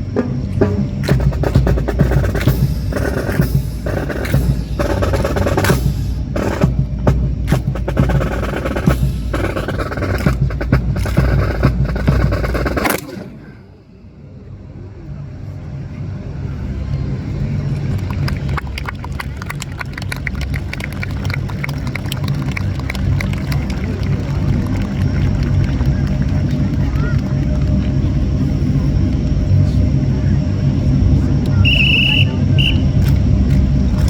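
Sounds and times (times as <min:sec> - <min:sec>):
drumming and sharp strikes: 0:00.0 - 0:13.4
low rumble: 0:00.0 - 0:34.0
people clapping: 0:01.0 - 0:01.3, 0:02.0 - 0:05.8, 0:07.4 - 0:12.4, 0:17.4 - 0:28.7, 0:32.6 - 0:34.0.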